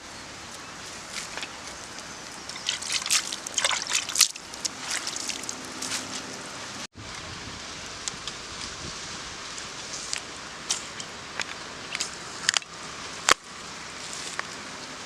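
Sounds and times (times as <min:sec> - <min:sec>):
liquid sloshing and trickling: 0:02.4 - 0:06.3.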